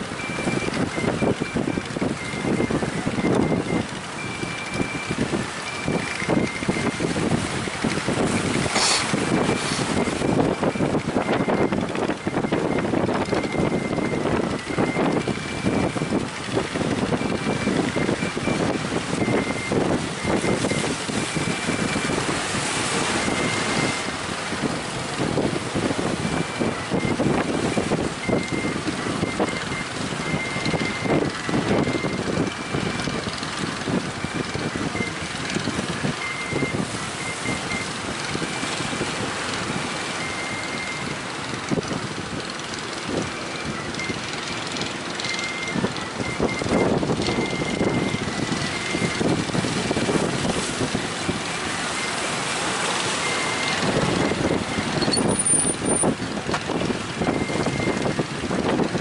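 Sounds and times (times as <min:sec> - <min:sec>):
wind buffeting microphone: 0:00.0 - 0:59.0
faint high beeping tone: 0:36.2 - 0:37.9, 0:45.2 - 0:49.2, 0:54.5 - 0:56.0.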